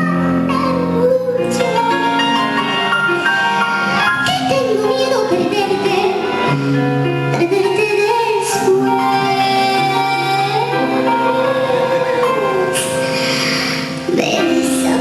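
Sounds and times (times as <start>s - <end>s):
woman singing: 0.0s - 2.8s, 7.3s - 15.0s.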